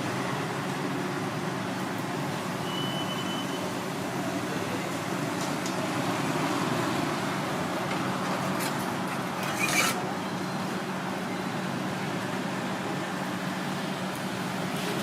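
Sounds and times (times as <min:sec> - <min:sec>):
street ambience with low hum: 0:00.0 - 0:15.0
scrape or clank: 0:09.4 - 0:10.0.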